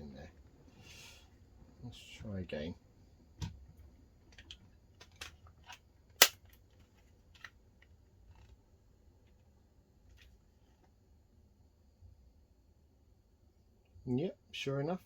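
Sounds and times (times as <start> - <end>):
loud sharp click: 6.2 - 6.4.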